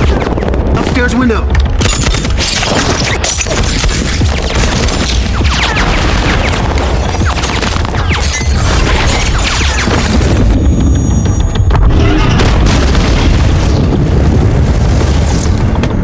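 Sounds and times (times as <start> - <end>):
rapid gunfire: 0.0 - 11.6
heavy low rumble: 3.5 - 16.0
explosion booms: 11.7 - 16.0.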